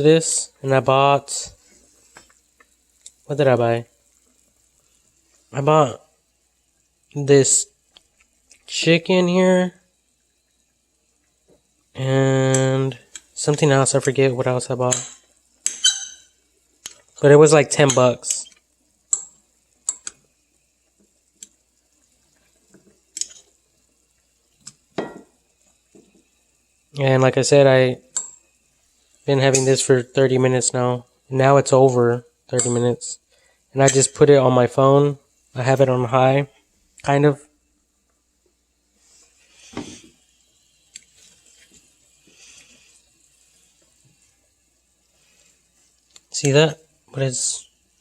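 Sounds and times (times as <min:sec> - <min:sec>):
small wet sounds: 0:01.4 - 0:08.8, 0:09.8 - 0:27.4, 0:35.2 - 0:48.0
utensil tapping a dish: 0:25.0 - 0:25.3.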